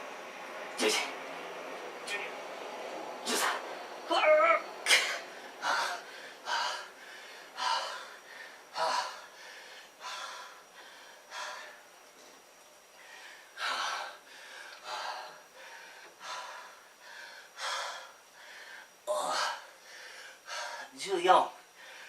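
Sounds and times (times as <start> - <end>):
man breathing heavily: 3.2 - 4.0, 4.8 - 12.0, 12.9 - 21.0, 21.6 - 22.0.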